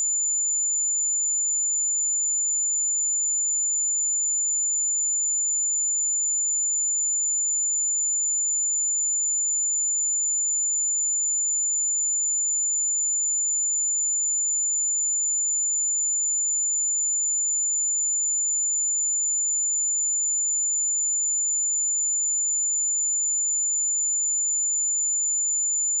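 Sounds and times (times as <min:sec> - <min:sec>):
high-pitched sine-wave test tone: 0:00.0 - 0:26.0.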